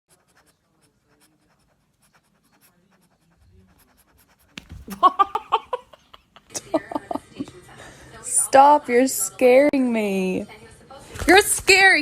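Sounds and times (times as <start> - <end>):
faint scratching and ticks: 0.1 - 4.8.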